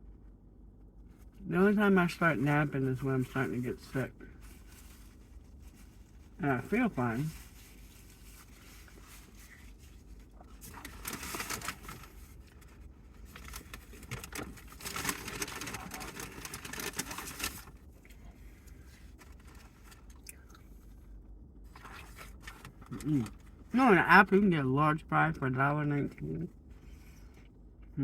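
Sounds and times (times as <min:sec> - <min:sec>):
paper packaging rustling: 0:07.0 - 0:17.8.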